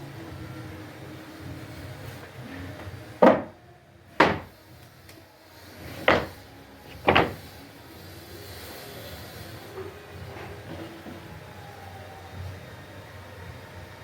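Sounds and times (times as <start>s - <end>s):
sharp wooden knocks: 3.2s - 3.6s, 4.2s - 4.6s, 5.8s - 7.4s.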